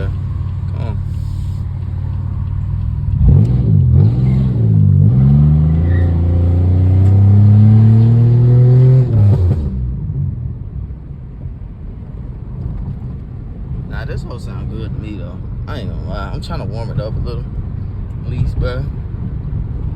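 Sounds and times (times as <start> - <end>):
car engine revving: 0.0 - 10.6.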